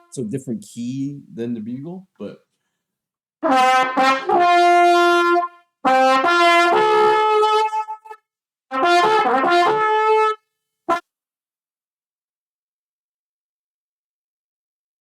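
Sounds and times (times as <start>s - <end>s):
brass instrument playing: 0.0s - 0.3s, 3.4s - 11.0s.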